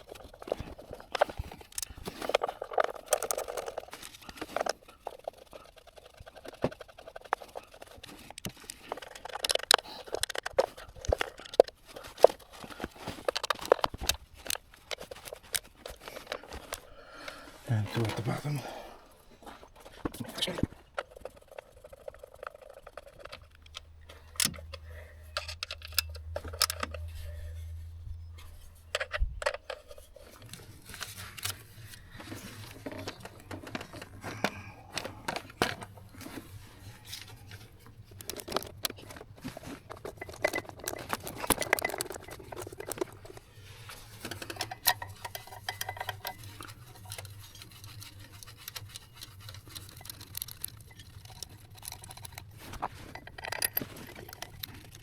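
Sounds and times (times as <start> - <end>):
low steady hum: 7.3 - 55.0
hand tools clicking on metal: 28.9 - 55.0.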